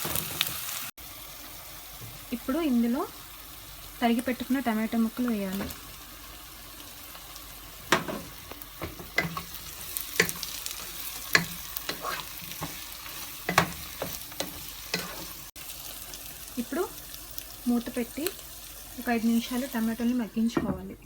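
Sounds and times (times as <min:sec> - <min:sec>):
tomatoes sizzling in hot oil: 0:00.0 - 0:20.6
utensil knocking and scraping pan: 0:07.8 - 0:15.4.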